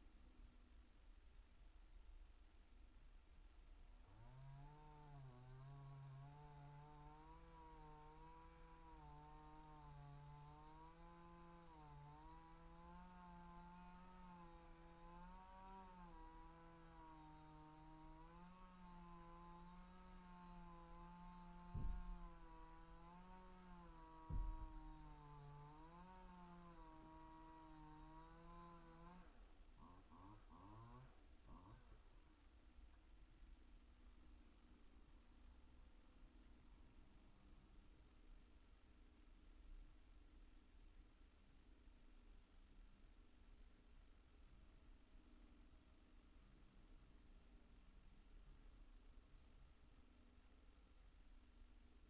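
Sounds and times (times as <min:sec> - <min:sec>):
chainsaw cutting wood: 0:04.0 - 0:32.0
sharp thumps: 0:21.6 - 0:22.5, 0:24.2 - 0:25.0.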